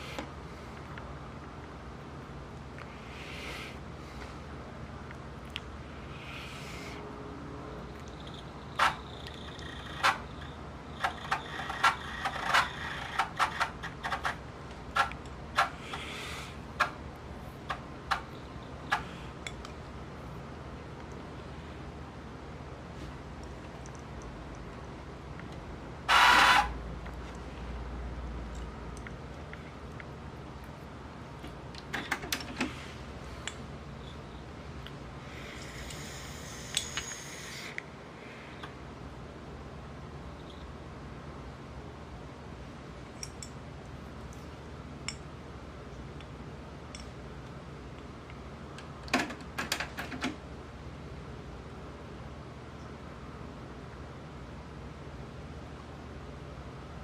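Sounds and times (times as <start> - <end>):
steady low hum: 0.0 - 57.0
cassette deck whirring whine: 8.1 - 16.0, 25.4 - 27.1.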